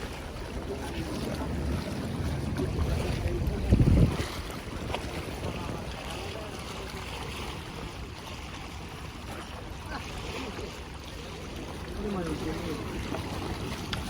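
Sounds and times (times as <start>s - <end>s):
wind on microphone: 0.0s - 7.9s.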